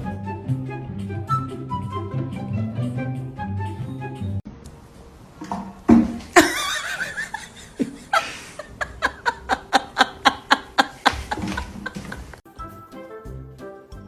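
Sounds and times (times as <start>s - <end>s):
person laughing: 6.4s - 12.4s.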